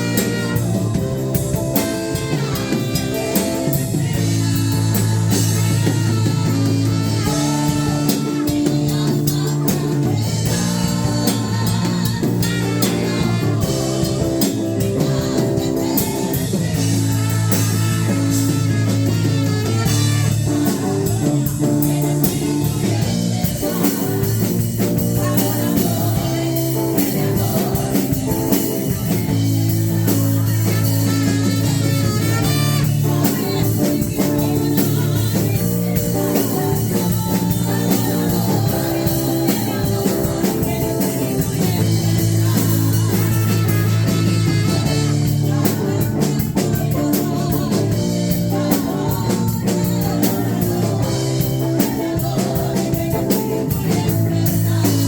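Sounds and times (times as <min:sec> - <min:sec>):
drum kit: 0:00.0 - 0:55.0
guitar: 0:00.0 - 0:55.0
person singing: 0:00.0 - 0:55.0.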